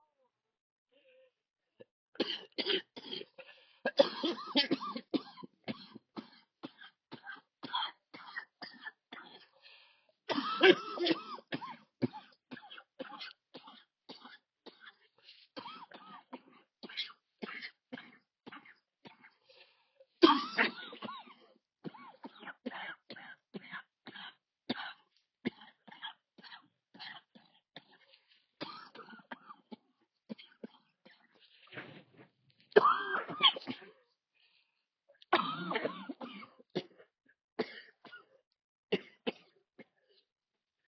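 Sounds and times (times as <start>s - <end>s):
person coughing: 2.2s - 9.5s, 10.3s - 19.3s, 20.2s - 28.0s, 32.8s - 34.0s, 35.4s - 38.4s
throat clearing: 32.8s - 34.0s.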